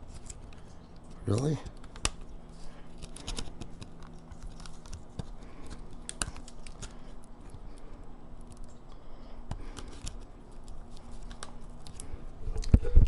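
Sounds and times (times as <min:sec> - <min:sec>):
fingernails clicking on plastic connectors: 0:03.0 - 0:07.0.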